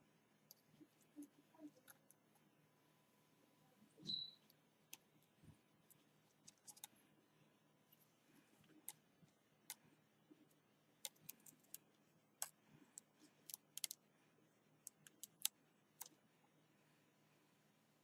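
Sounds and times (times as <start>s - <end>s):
faint small clicks and taps: 7.9s - 14.0s.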